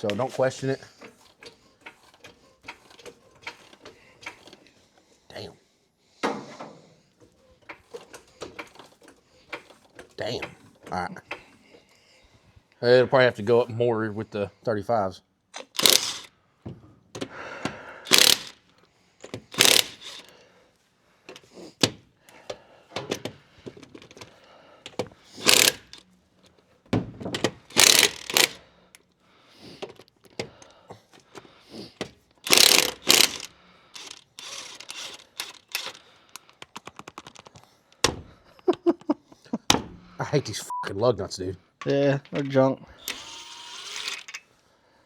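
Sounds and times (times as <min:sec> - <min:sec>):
impact wrench hammering: 0:15.6 - 0:16.3, 0:18.1 - 0:20.3, 0:24.9 - 0:26.0, 0:27.3 - 0:28.6, 0:32.5 - 0:36.0
metal clinks and clatter: 0:27.7 - 0:28.6.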